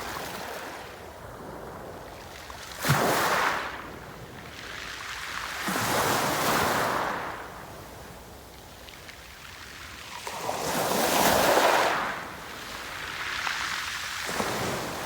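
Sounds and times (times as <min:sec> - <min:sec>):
sea waves breaking on shore: 0:10.1 - 0:15.0.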